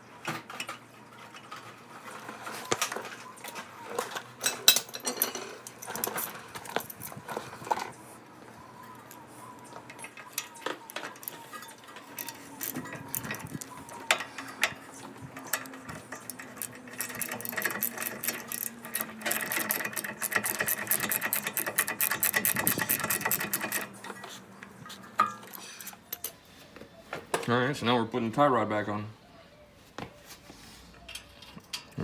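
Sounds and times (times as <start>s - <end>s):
metal tool clanks: 4.4s - 6.9s
ratchet wrench clicking: 12.1s - 14.8s, 15.5s - 23.9s.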